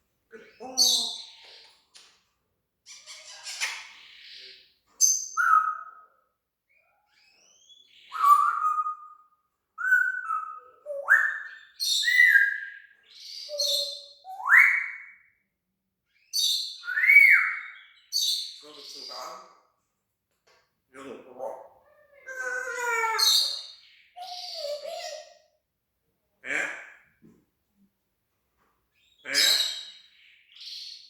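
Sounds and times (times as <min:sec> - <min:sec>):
parrot whistling and squeaking: 0:05.0 - 0:06.0, 0:07.2 - 0:09.2.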